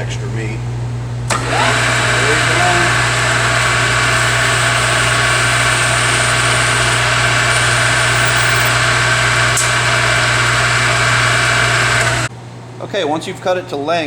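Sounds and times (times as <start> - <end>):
lathe humming: 1.3 - 12.3.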